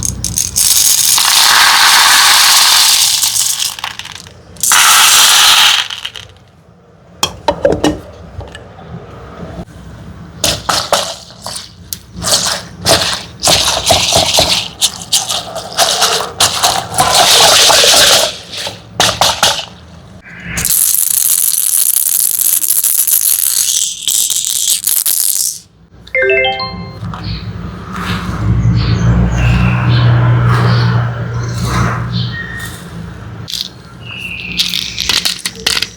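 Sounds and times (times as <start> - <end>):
hard candies clattering: 0.0 - 6.5, 10.6 - 19.6, 20.6 - 25.6, 33.5 - 33.7, 34.6 - 35.9
rising chime-like notes: 26.2 - 27.0.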